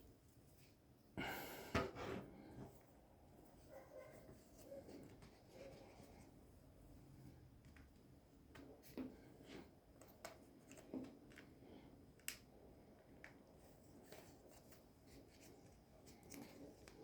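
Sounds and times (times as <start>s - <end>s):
soft rustles: 13.6s - 17.0s.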